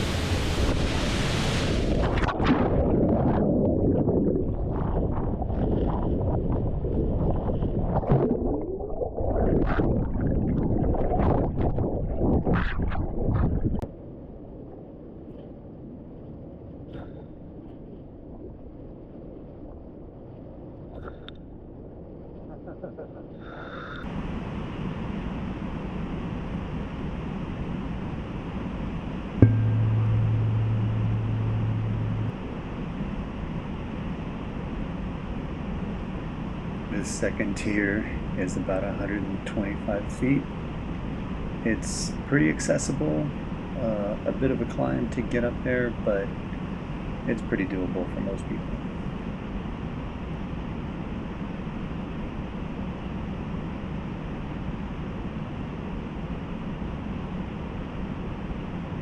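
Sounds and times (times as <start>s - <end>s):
loud low hum: 29.4s - 33.3s.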